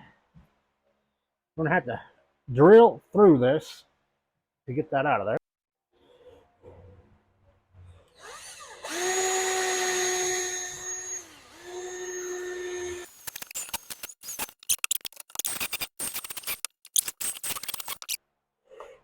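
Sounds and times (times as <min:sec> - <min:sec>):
power drill drilling: 0:08.1 - 0:18.2.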